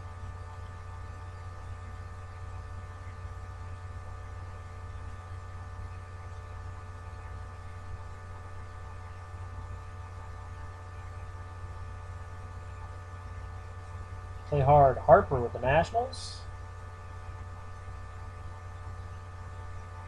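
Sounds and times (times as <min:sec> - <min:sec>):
electrical mains hum: 0:00.0 - 0:20.0.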